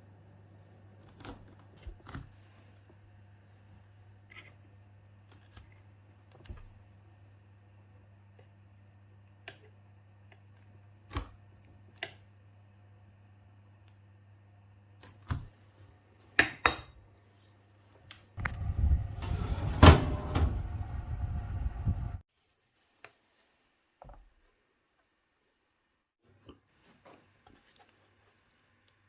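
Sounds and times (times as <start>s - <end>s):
low electrical hum: 0.0s - 22.3s
loud rough rumbling noise: 18.4s - 22.2s.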